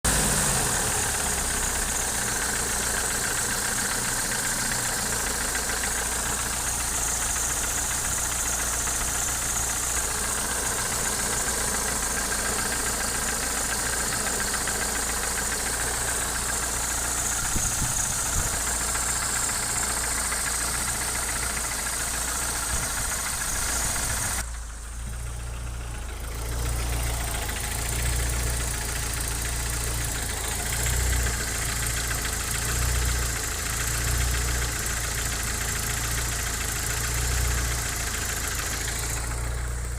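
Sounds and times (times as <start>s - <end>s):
car engine running: 0.0s - 39.9s
engine knocking: 0.0s - 39.9s.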